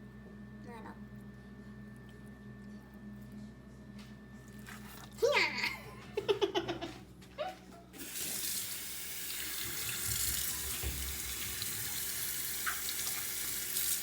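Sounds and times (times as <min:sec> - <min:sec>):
tap water running into sink: 0:08.0 - 0:14.0.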